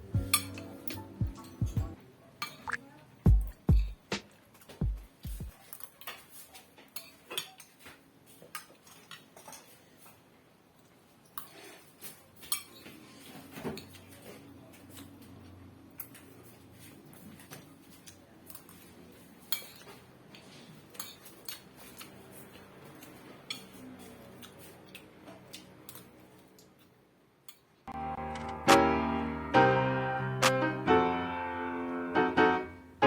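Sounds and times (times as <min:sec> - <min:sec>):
dishes and cutlery clinking: 0:00.2 - 0:01.8, 0:02.4 - 0:02.8, 0:05.5 - 0:09.8, 0:11.3 - 0:15.2, 0:19.4 - 0:22.2, 0:23.0 - 0:24.2.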